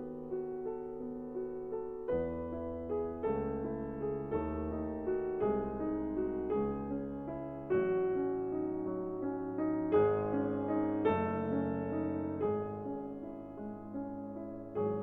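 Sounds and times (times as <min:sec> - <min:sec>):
soft piano chords: 0:00.0 - 0:15.0.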